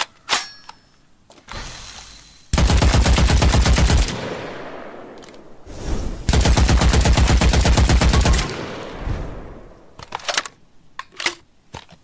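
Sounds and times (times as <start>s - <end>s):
machine gun automatic fire: 2.5s - 4.4s, 6.3s - 9.0s.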